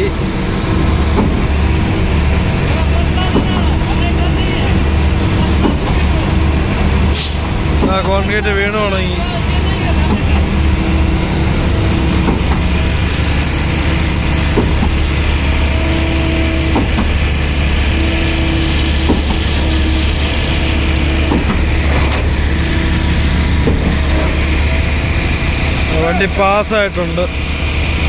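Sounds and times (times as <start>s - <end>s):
engine droning: 0.0s - 28.0s
pump pistons knocking: 0.0s - 28.0s.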